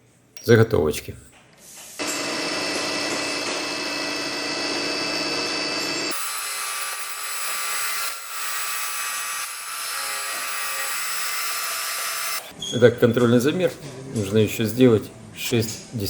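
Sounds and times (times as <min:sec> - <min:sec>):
milling cutter cutting metal: 0:02.0 - 0:12.5.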